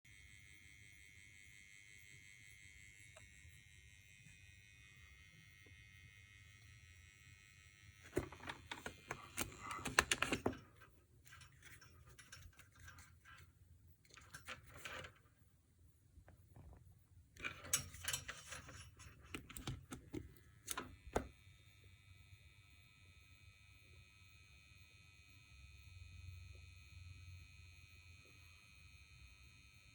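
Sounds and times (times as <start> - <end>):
high-pitched electrical buzz: 0.1 - 9.8, 20.6 - 29.9
low electrical hum: 0.1 - 29.9
clicking and rattling handling noise: 8.1 - 15.3, 17.4 - 21.3.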